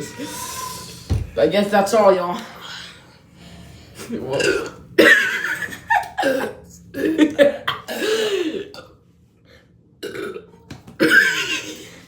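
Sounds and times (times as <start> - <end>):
person burping: 4.3 - 5.2, 6.2 - 8.9, 10.0 - 11.9.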